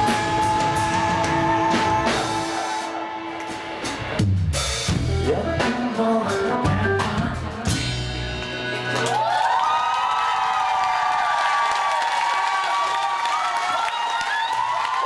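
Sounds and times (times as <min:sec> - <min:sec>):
live rock band playing: 0:00.0 - 0:09.2
heavy drum kit hits: 0:03.8 - 0:08.4.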